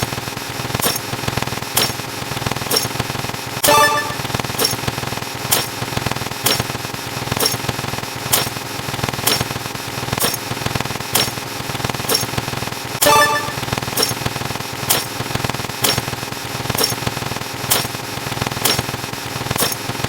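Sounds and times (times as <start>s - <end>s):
short ringing tone: 3.6s - 4.8s, 13.0s - 14.2s.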